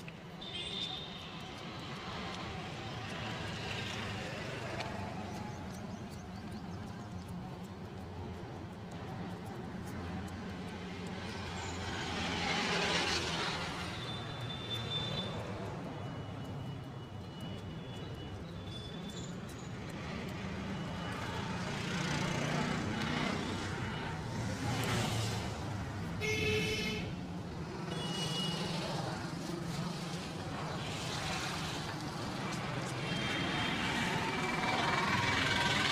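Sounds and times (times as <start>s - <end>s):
vehicles passing: 0.0s - 35.9s
vehicle horn honking: 0.4s - 1.2s, 26.2s - 27.1s, 27.9s - 28.6s.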